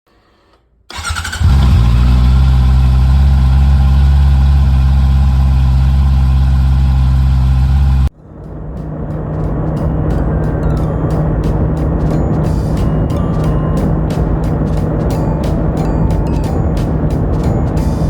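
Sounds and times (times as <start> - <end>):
motorcycle starter cranking: 0.9 - 5.5
motorcycle engine idling: 0.9 - 8.1.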